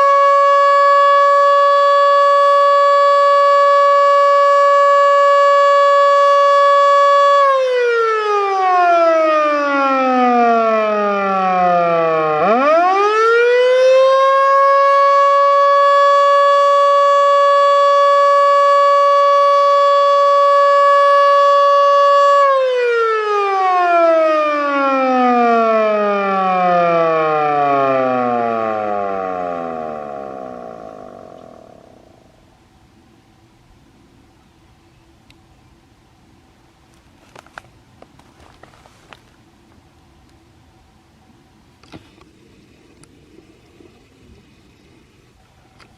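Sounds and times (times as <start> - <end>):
storm siren wailing: 0.0 - 32.5.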